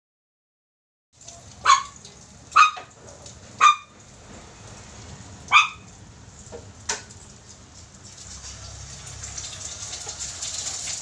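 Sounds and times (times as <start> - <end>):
dog barking: 1.6 - 3.0, 3.6 - 4.0, 5.5 - 5.9.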